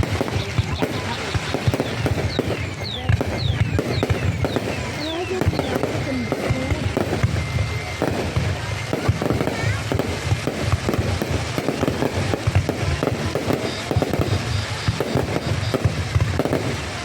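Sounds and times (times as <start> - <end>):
fireworks popping and banging: 0.0 - 17.0.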